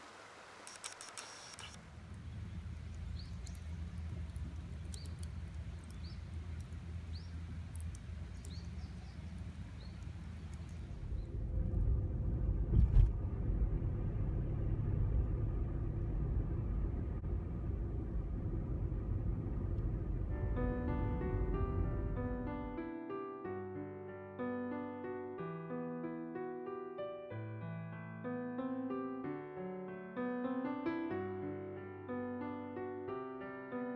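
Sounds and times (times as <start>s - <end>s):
car engine rumbling: 1.8s - 22.8s.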